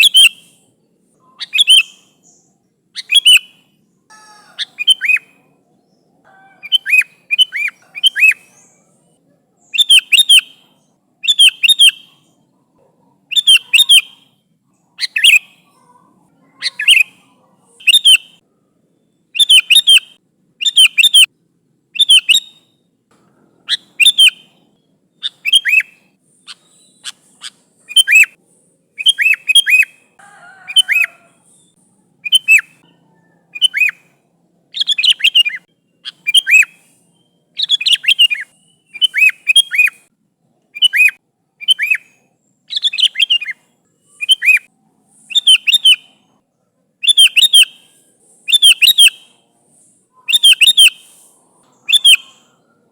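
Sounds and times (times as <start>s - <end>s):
bulbul chattering calls: 1.2s - 5.6s, 6.3s - 9.0s, 13.3s - 14.3s, 15.0s - 18.4s, 23.7s - 24.6s, 29.0s - 34.1s, 34.7s - 40.0s, 40.8s - 44.7s, 45.3s - 46.3s, 47.0s - 49.4s, 50.1s - 52.9s.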